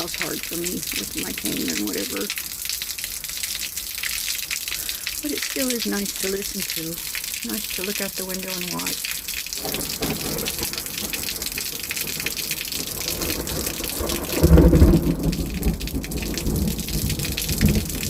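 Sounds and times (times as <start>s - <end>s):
heavy rain pouring: 0.0s - 18.0s
low rumble of thunder: 9.6s - 18.0s.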